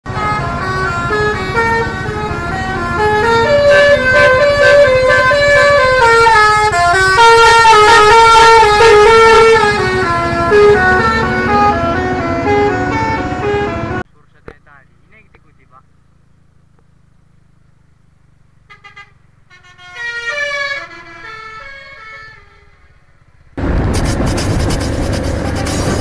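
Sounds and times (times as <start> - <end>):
bus engine rumble: 0.0 - 26.0
musical air horn melody: 0.1 - 14.0, 18.7 - 23.0.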